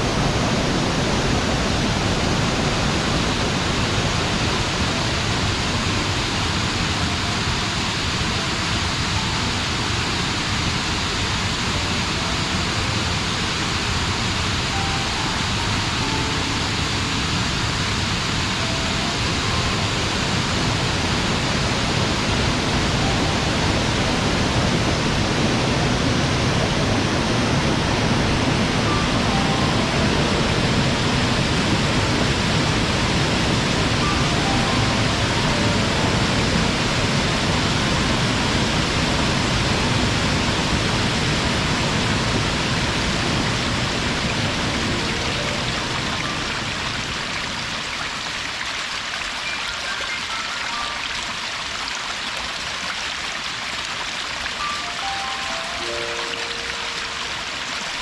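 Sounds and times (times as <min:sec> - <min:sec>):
waterfall pouring: 0:00.0 - 0:58.0.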